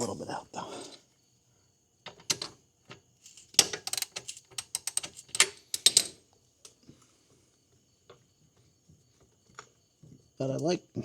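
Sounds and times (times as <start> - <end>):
hand tool clicking and ratcheting: 3.3 - 6.1.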